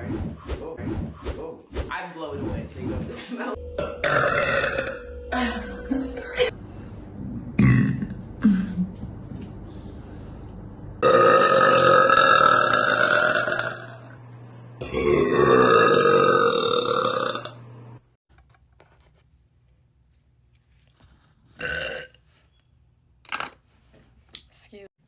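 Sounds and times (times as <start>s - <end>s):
woman belching: 3.8s - 6.5s, 7.6s - 8.7s, 11.0s - 14.0s, 14.8s - 17.6s.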